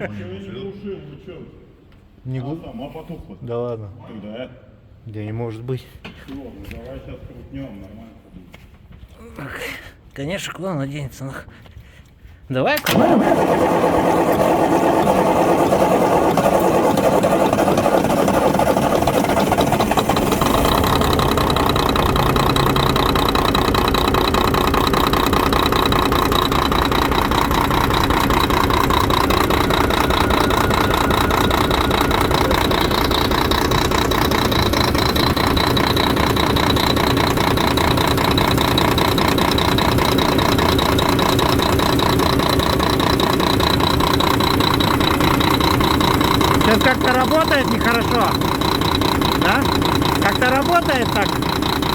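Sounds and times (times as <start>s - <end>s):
diesel engine cranking on starter: 12.8s - 51.9s
diesel engine idling unevenly: 12.9s - 51.9s.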